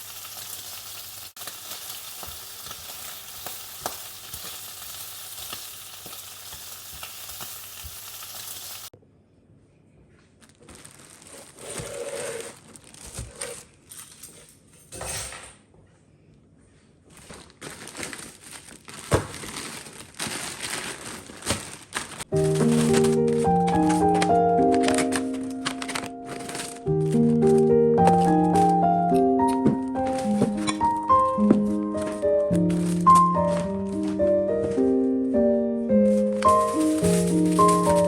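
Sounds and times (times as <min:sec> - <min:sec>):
food sizzling in a pan: 0:00.0 - 0:08.9
kitchen clatter: 0:13.0 - 0:15.7, 0:29.5 - 0:34.2, 0:36.4 - 0:38.0.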